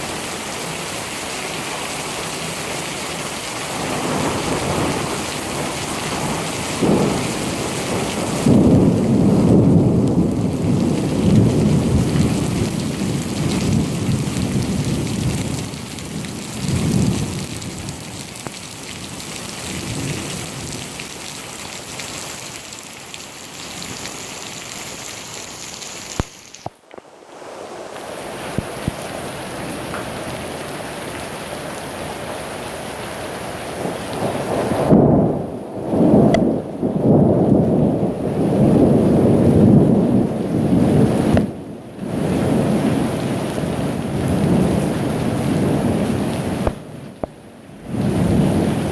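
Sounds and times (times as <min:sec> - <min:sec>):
steady rain: 0:00.0 - 0:48.9
rolling thunder: 0:03.7 - 0:17.9, 0:33.8 - 0:46.8, 0:47.9 - 0:48.9.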